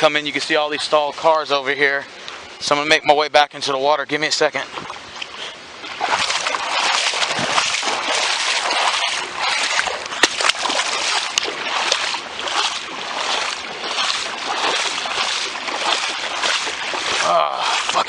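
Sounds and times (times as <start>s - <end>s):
person wading through water: 4.6s - 18.0s.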